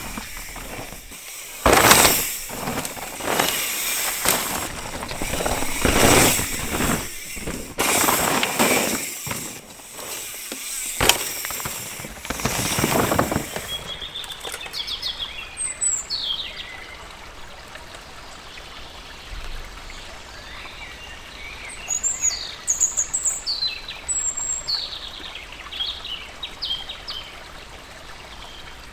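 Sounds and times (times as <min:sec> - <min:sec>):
bike tyres on loose dirt: 0:00.0 - 0:16.6
birds chirping: 0:00.0 - 0:16.9.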